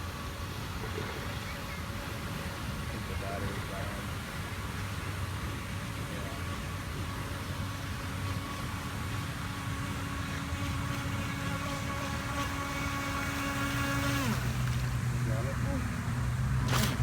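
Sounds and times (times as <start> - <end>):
electric motor whining: 6.6 - 17.0.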